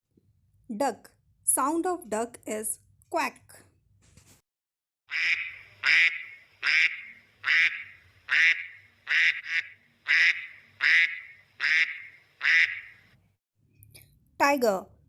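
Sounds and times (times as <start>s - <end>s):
duck quacking: 5.1s - 13.1s.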